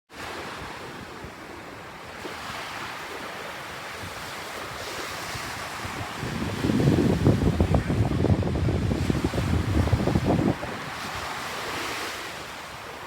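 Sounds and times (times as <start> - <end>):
surf breaking on beach: 0.1 - 13.0
wind buffeting microphone: 3.8 - 11.8.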